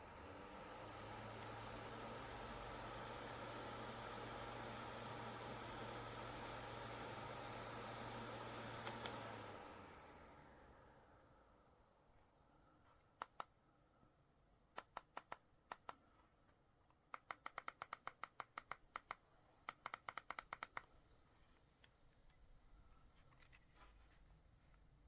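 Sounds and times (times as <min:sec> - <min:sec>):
faint short clicks: 0:08.8 - 0:09.2.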